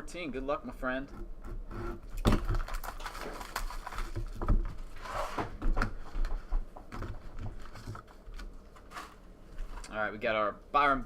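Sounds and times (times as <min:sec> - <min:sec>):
packaging rustling and scraping: 0:01.8 - 0:09.9.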